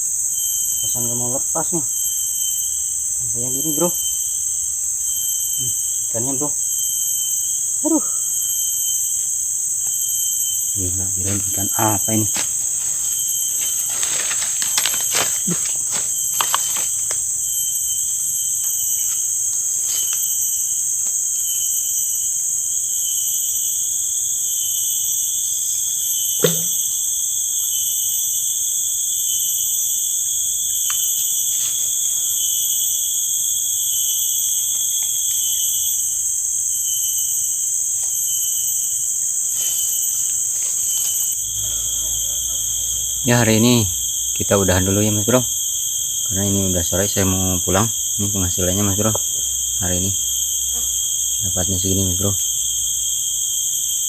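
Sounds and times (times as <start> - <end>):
insects shrilling: 0.0 - 54.0.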